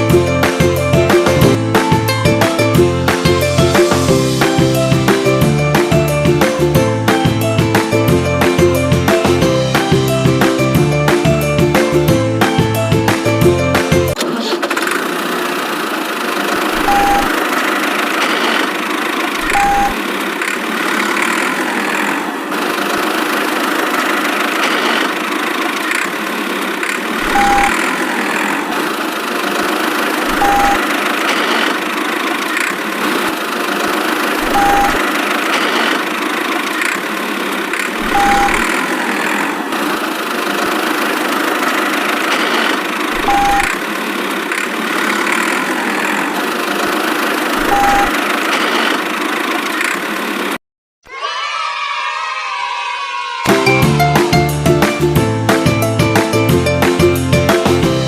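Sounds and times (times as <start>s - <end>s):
engine idling: 0.0s - 50.6s
short beep: 16.8s - 17.3s, 19.5s - 20.0s, 27.3s - 27.8s, 30.4s - 30.8s, 34.5s - 35.0s, 38.1s - 38.7s, 43.2s - 43.7s, 47.7s - 48.1s.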